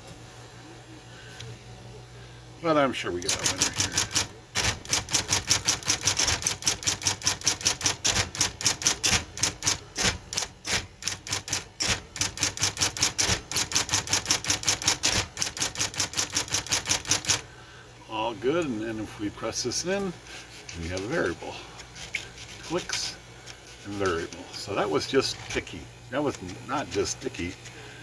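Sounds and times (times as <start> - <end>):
typewriter motor hum: 3.1 - 17.5, 20.0 - 28.0
typewriter keystrokes: 3.2 - 17.4.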